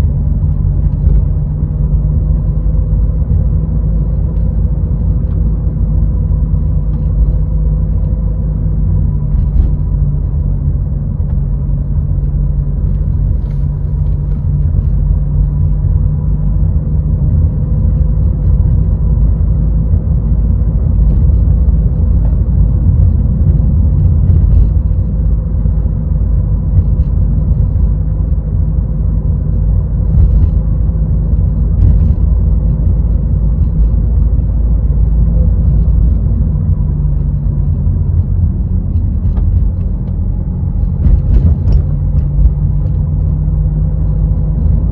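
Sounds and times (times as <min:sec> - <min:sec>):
car engine and tyres rumbling: 0:00.0 - 0:44.9.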